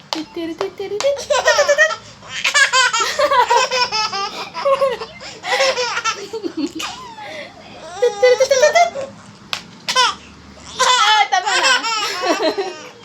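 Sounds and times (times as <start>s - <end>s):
child giggling and squealing: 2.8s - 9.1s.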